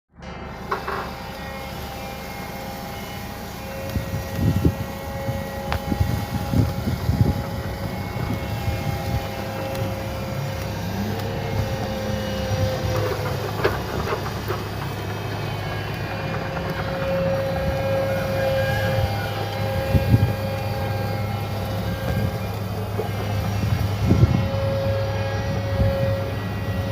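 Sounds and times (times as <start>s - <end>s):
bulldozer running: 0.1s - 26.9s
knocks and clanks: 11.4s - 20.8s.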